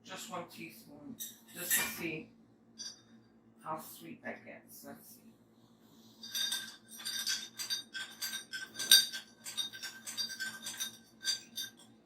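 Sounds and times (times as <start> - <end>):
spoon clinking in glass with ice: 6.2 - 11.9.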